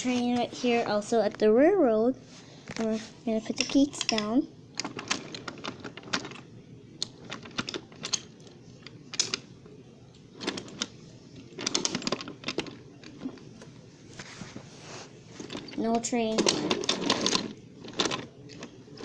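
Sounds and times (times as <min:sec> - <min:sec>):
small toys clicking and clattering: 0:02.7 - 0:09.5, 0:10.4 - 0:13.5, 0:15.4 - 0:19.0.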